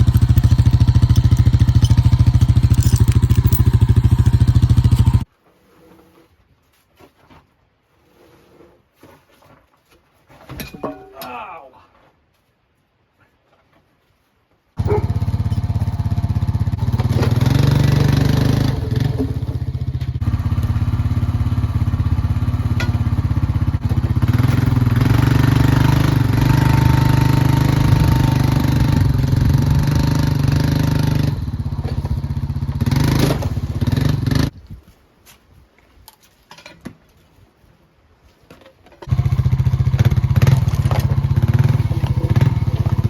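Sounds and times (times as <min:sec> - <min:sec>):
small gasoline engine running: 0:00.0 - 0:05.2, 0:14.8 - 0:34.5, 0:39.1 - 0:43.0.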